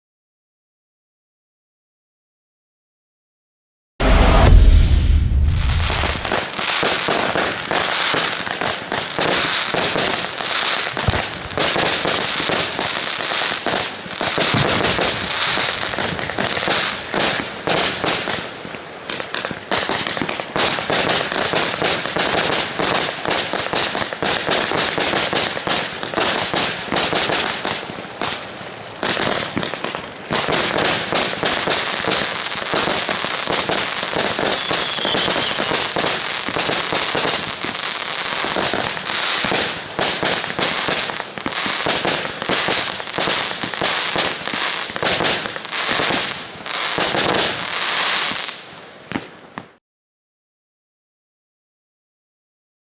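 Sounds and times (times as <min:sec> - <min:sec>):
fireworks cake firing: 0:04.0 - 0:08.3, 0:13.8 - 0:46.4.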